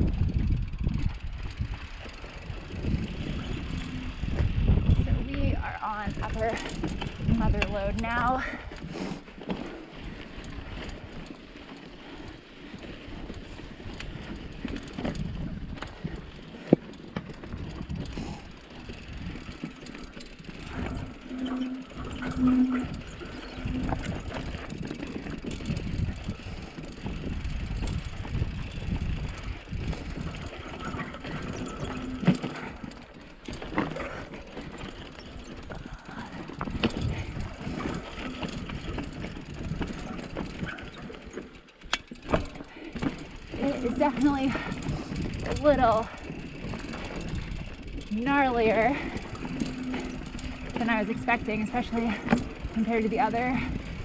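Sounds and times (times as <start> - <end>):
bike rattling: 0.0 - 54.0
tyres rolling over dirt and rock: 13.0 - 54.0.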